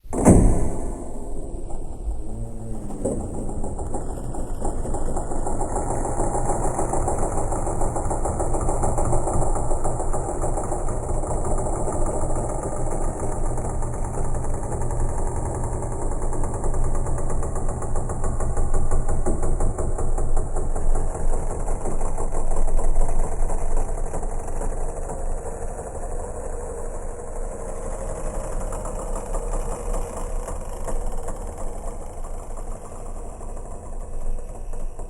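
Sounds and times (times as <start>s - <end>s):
heavy door grinding open: 0.0s - 21.6s
low rumble: 0.0s - 24.6s.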